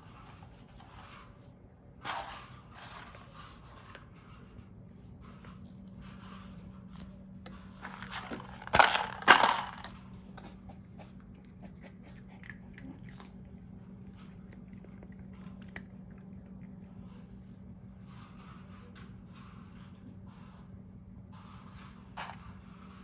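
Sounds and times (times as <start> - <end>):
cat crunching dry food: 5.9 - 17.4.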